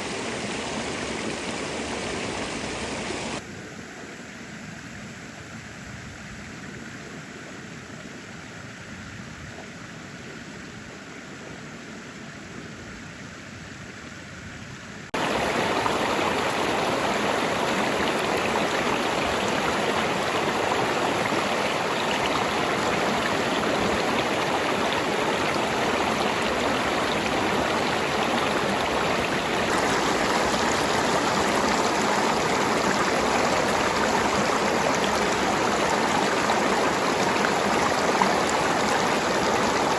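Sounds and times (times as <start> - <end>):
running water rushing: 0.0 - 3.4, 15.2 - 39.9.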